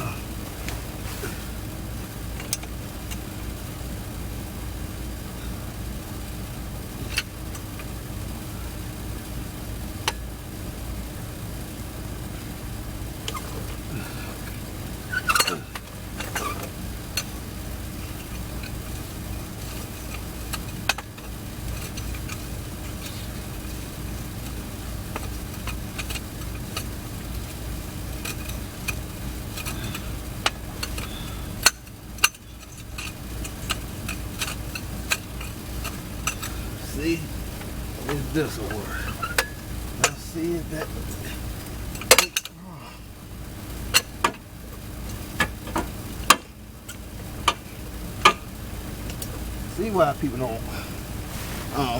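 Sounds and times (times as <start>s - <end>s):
steady background hum: 0.0s - 51.9s
clicks and knocks of work: 19.6s - 23.2s, 42.0s - 42.6s, 45.1s - 48.5s
short scraping: 51.2s - 51.8s.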